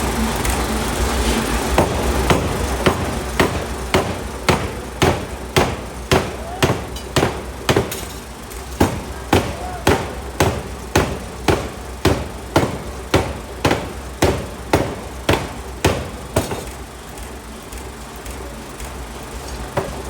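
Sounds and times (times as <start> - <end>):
forging hammer striking steel: 1.7 - 16.9, 19.8 - 20.0.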